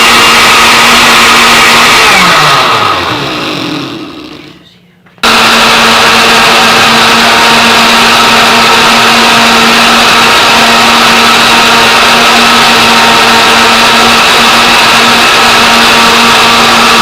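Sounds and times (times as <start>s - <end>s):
electric blender whirring: 0.0s - 4.6s, 5.2s - 17.0s.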